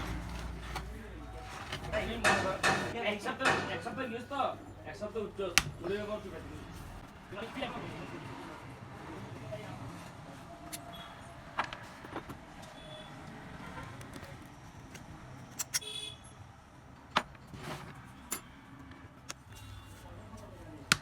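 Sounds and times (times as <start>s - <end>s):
clicks and knocks of hand tools: 2.2s - 3.8s.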